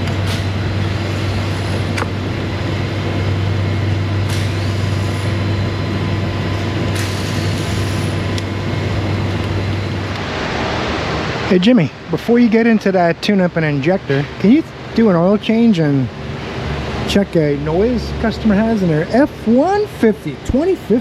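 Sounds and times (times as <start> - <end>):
low machine hum: 0.0 - 21.0
hiss-like noise: 4.2 - 5.6, 6.6 - 8.4.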